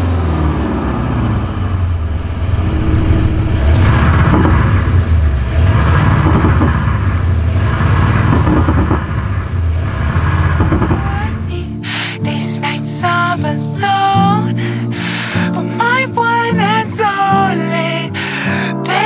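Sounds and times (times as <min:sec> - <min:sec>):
synthetic engine exhaust rumble: 0:01.1 - 0:11.8.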